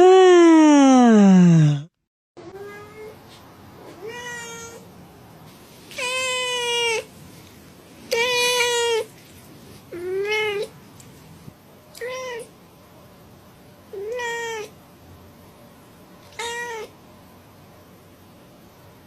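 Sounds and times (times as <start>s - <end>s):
cat meowing: 4.0s - 4.8s, 8.1s - 9.1s, 14.0s - 14.7s, 16.3s - 16.9s.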